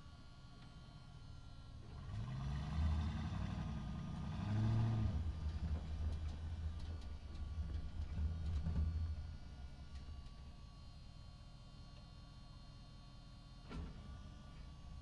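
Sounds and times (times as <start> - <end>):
truck engine revving: 1.9 - 6.4.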